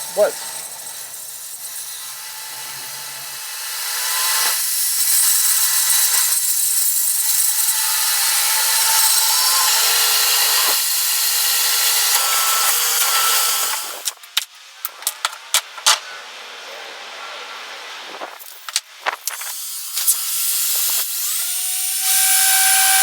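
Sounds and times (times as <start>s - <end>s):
power tool cutting wood: 0.0s - 14.2s, 19.0s - 23.0s.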